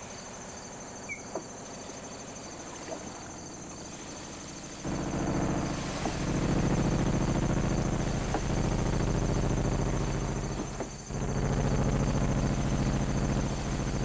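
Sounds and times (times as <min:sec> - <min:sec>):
buzzy synthesizer drone: 0:04.8 - 0:14.0.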